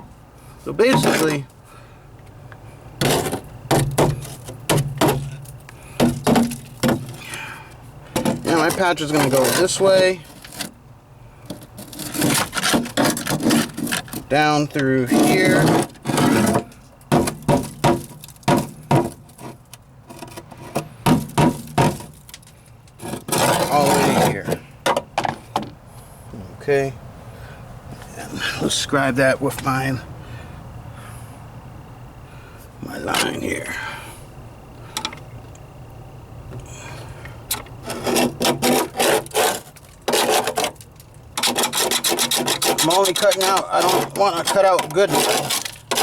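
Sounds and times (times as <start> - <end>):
scraping rustle: 3.0 - 10.8, 11.4 - 24.7, 37.5 - 46.0
metal tools tapping sheet steel: 41.4 - 46.0.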